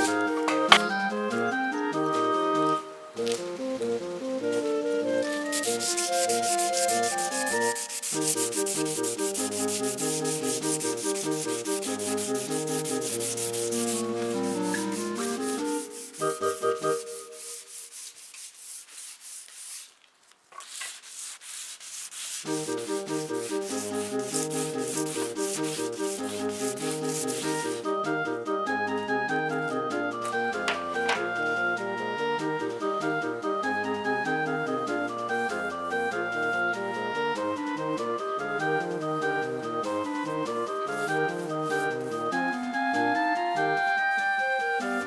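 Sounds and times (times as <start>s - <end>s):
wood being sanded: 0.0s - 0.9s, 5.2s - 20.0s, 20.6s - 27.9s, 39.8s - 42.5s
background music: 0.0s - 17.8s, 22.4s - 45.0s.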